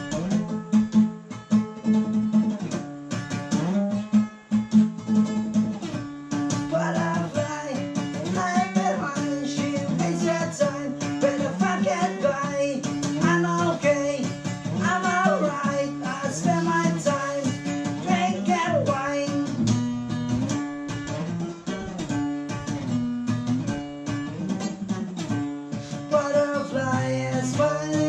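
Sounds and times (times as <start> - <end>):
acoustic guitar playing: 0.0 - 28.0
person singing: 6.6 - 19.8, 25.8 - 28.0.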